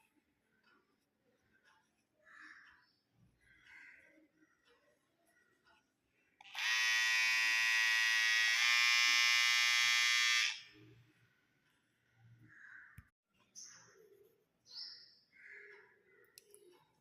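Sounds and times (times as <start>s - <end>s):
electric hair trimmer buzzing: 6.4s - 10.8s.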